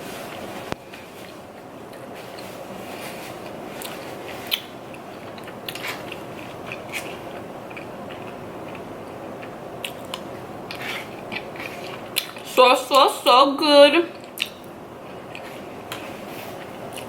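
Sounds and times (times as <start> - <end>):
steady background noise: 0.0 - 17.0
person chewing crunchy food: 0.9 - 12.5.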